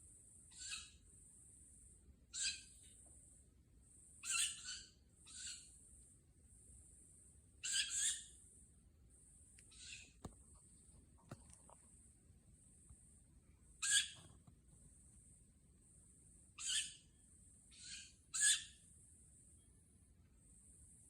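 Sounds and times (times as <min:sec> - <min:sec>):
birds squeaky calls: 0:00.5 - 0:01.0, 0:02.3 - 0:02.9, 0:04.2 - 0:05.8, 0:07.6 - 0:08.4, 0:09.7 - 0:10.2, 0:13.8 - 0:14.4, 0:16.6 - 0:17.1, 0:17.7 - 0:18.8.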